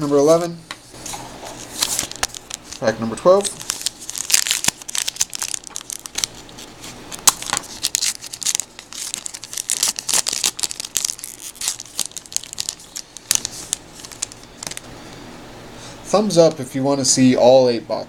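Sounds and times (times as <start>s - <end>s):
wrapper tearing and crinkling: 1.0s - 14.9s.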